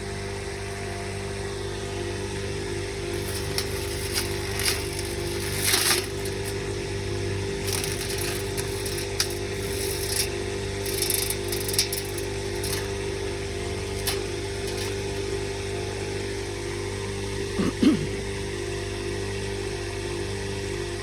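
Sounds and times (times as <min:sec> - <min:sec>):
grass chopper humming: 0:03.1 - 0:15.5
leaves crackling in blades: 0:03.2 - 0:06.9, 0:07.6 - 0:15.5.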